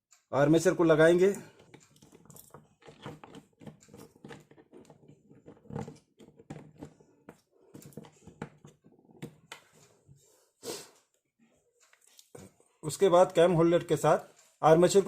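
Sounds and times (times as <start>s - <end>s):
drill parts clicking and knocking: 1.3s - 9.8s.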